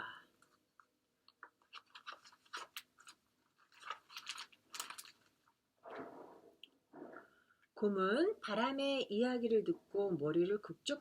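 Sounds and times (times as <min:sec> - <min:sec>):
handling clicks and crackles: 0:00.4 - 0:05.6.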